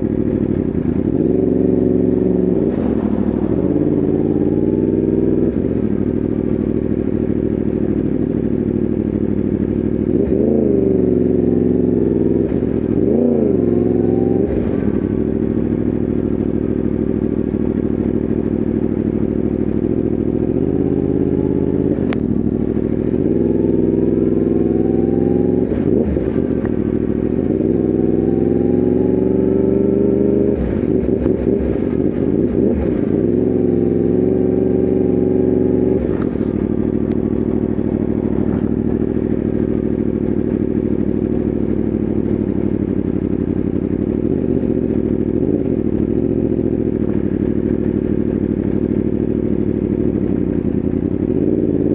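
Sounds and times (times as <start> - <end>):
motorcycle engine running: 0.0 - 51.9.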